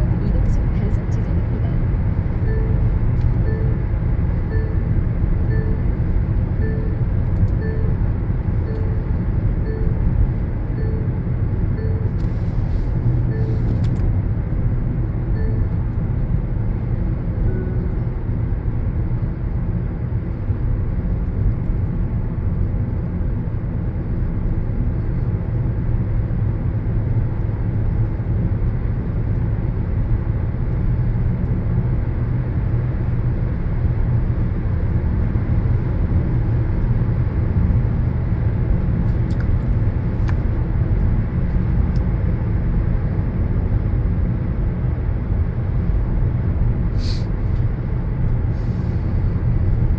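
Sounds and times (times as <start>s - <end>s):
car road rumble from inside: 0.0s - 49.9s
short soft repeating tone: 2.3s - 6.0s, 6.6s - 12.3s.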